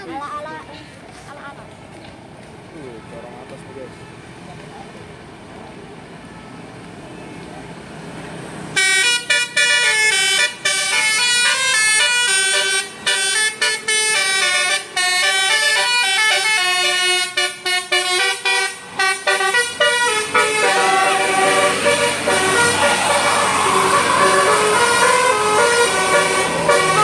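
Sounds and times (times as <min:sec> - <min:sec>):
multi-tone air horn melody: 0:08.8 - 0:27.0.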